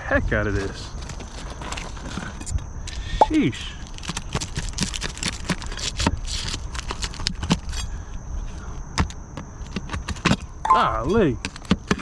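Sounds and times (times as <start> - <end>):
nails and shingles being pried out: 0.9 - 3.0, 3.8 - 8.1, 8.9 - 10.6, 11.4 - 12.0.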